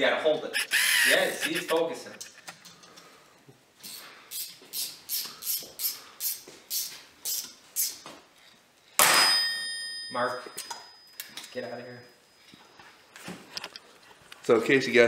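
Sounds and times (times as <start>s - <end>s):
raspy hand tool strokes on metal: 0.5s - 2.4s
metallic clang ringing: 9.0s - 12.0s.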